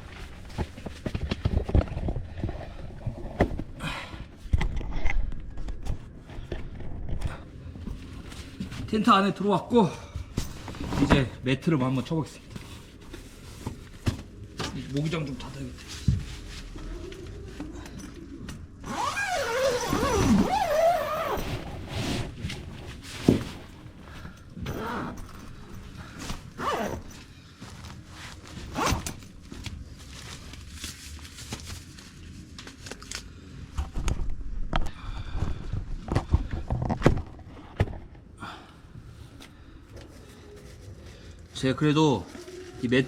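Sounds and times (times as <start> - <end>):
rustling and knocks of gear: 0.0 - 3.8, 12.4 - 34.5
zipper being drawn closed: 18.8 - 22.1, 26.6 - 27.2.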